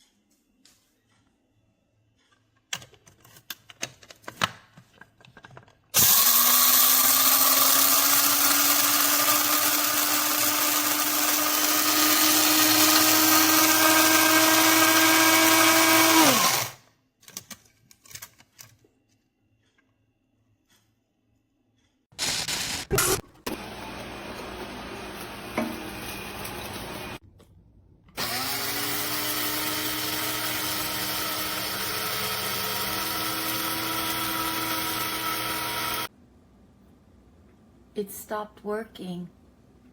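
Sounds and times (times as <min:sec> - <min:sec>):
coffee grinder motor: 0:06.0 - 0:16.8, 0:22.2 - 0:27.2, 0:28.2 - 0:36.1.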